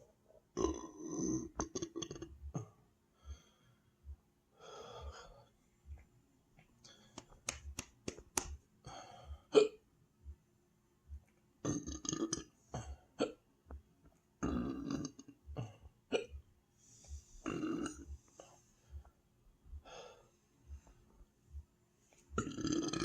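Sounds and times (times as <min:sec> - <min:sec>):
person belching: 0:00.6 - 0:02.7, 0:11.6 - 0:13.4, 0:14.4 - 0:16.3, 0:17.4 - 0:18.0, 0:22.4 - 0:23.0
person hiccuping: 0:09.5 - 0:09.8, 0:11.6 - 0:13.4, 0:14.4 - 0:16.4.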